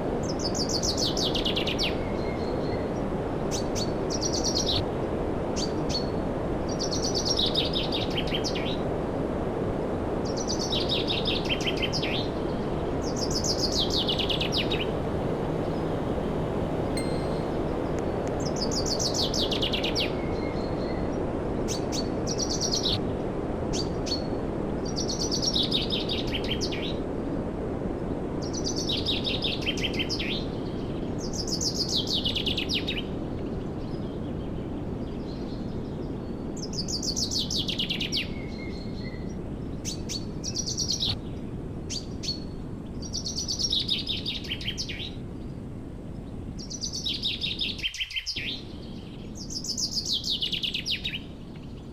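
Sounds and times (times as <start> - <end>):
low rushing noise: 12.0 - 20.3
songbird trilling: 16.9 - 18.5.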